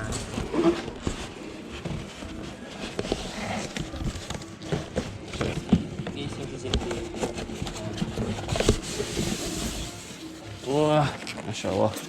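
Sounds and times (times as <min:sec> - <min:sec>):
cardboard box knocks and rustles: 0:02.9 - 0:09.7.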